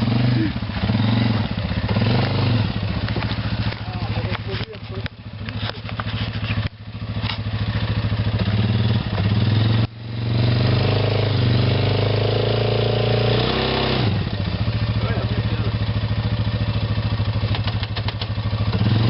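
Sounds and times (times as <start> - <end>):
atv engine idling and revving: 0.0 - 19.0.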